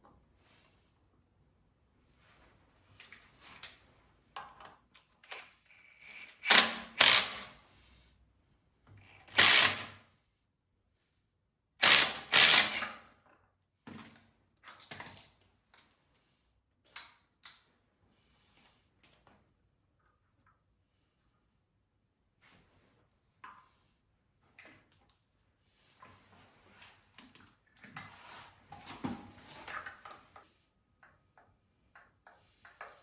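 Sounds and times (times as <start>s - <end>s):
ratcheting or rattling: 9.0s - 9.9s, 11.8s - 12.9s
tools and metal parts clanking: 14.6s - 16.0s.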